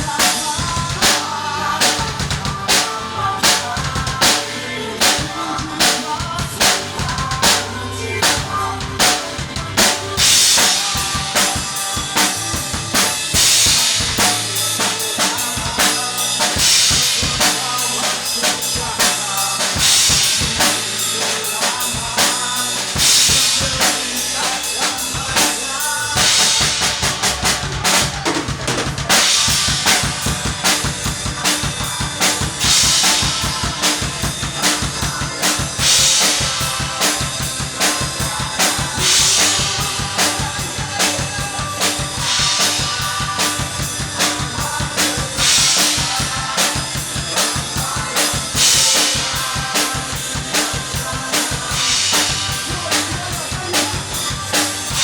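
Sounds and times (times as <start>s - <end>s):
kick and snare drum beat: 0.0s - 21.0s, 24.8s - 55.0s
bass line: 0.0s - 55.0s
instrumental band music: 0.0s - 55.0s.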